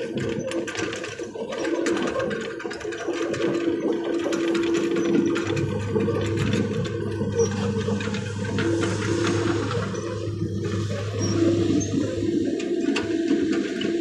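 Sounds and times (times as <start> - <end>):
excavator engine and hydraulics: 0.0 - 14.0
deeper hum: 4.6 - 14.0.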